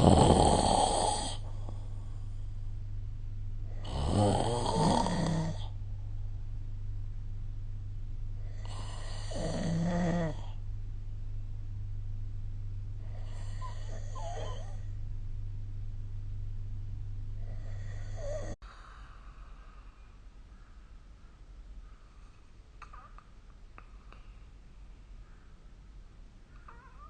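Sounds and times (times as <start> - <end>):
person snoring: 0.0 - 2.2, 3.7 - 5.8, 8.4 - 10.6, 13.0 - 14.9, 17.4 - 18.6
steady low hum: 0.0 - 27.0.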